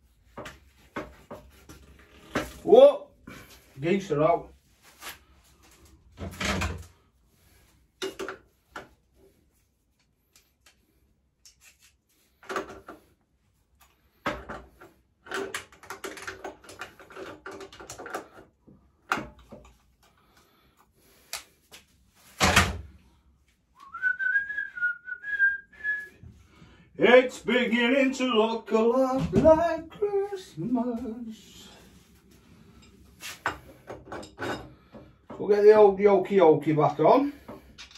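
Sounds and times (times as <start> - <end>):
man whistling: 23.8 - 26.2
metal tools clattering: 32.7 - 35.0, 37.6 - 37.9.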